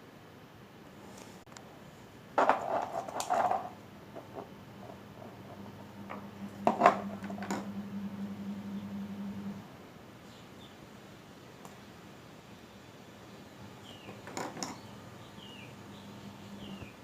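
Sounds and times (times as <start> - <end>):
steady low hum: 0.0 - 17.0
small objects knocking and rattling: 2.4 - 4.5, 14.1 - 14.8.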